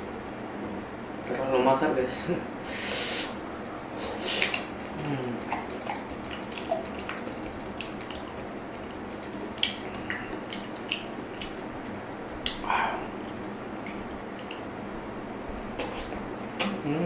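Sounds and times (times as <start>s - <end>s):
wet chewing of fruit: 4.3s - 14.7s.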